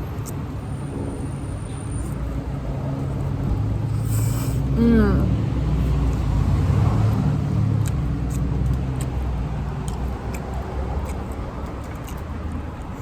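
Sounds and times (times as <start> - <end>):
wet chewing clicks: 0.1 - 0.4, 5.9 - 13.0.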